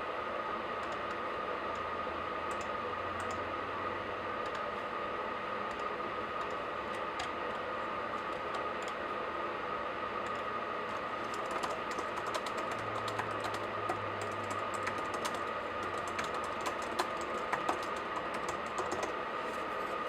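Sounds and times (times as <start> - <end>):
keyboard and mouse clicks: 5.7 - 7.4, 11.2 - 19.1.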